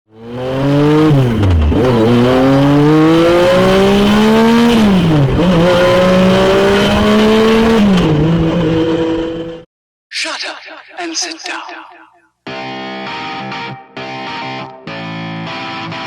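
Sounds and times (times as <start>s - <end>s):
car engine accelerating hard: 0.1s - 9.6s.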